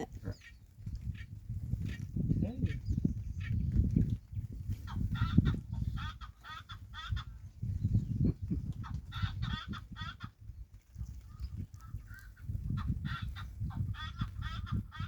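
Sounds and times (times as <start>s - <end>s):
bird warbling calls: 0.0s - 3.8s.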